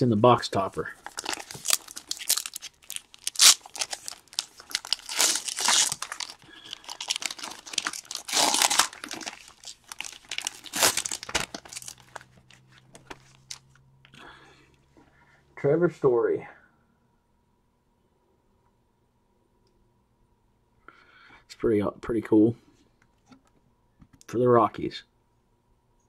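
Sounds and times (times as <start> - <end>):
wrapper tearing and crinkling: 1.0 - 13.6.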